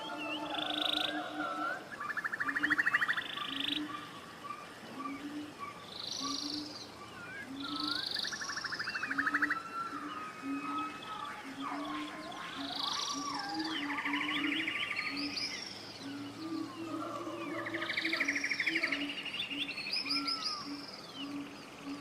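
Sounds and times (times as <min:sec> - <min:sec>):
birds trilling and chirping: 0:00.0 - 0:22.0.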